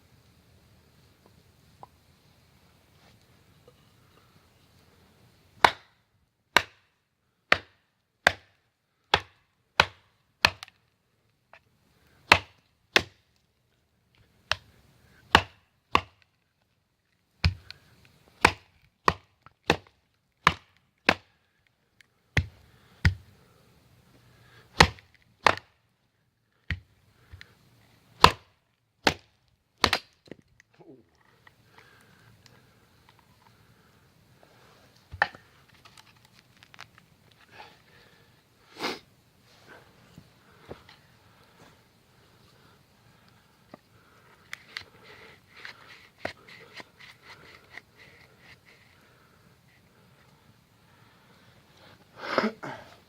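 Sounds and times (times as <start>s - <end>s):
wood chopping strikes: 5.6s - 6.9s, 7.5s - 10.8s, 12.2s - 13.2s, 14.4s - 14.7s, 15.3s - 16.3s, 17.4s - 17.7s, 18.4s - 21.4s, 22.4s - 23.3s, 24.7s - 25.8s, 28.2s - 30.4s, 35.1s - 35.4s.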